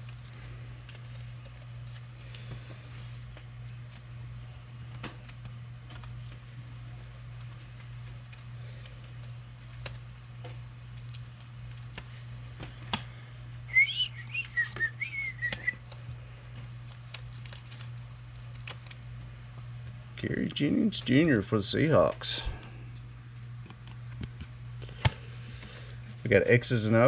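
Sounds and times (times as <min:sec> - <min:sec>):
low hum: 0:00.0 - 0:27.0
warbling high whistle: 0:13.7 - 0:15.7.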